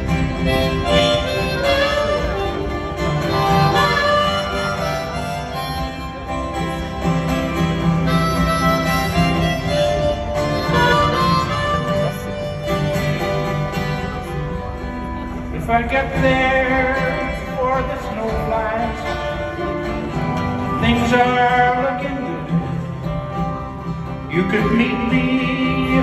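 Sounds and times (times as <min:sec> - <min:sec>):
harmonica solo: 0:00.0 - 0:15.2
strummed acoustic guitar: 0:00.0 - 0:26.0.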